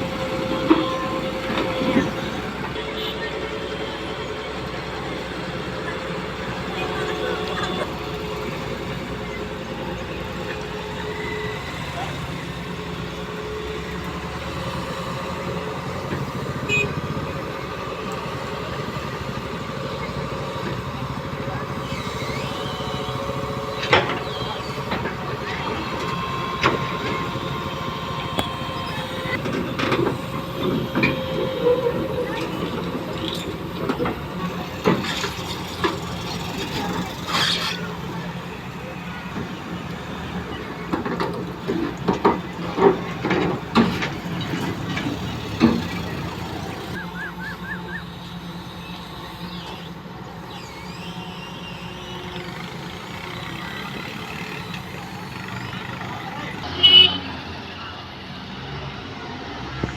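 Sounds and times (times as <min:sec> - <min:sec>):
excavator diesel engine rumbling: 0:00.0 - 0:59.9
high-pitched squeak: 0:34.4 - 0:37.9.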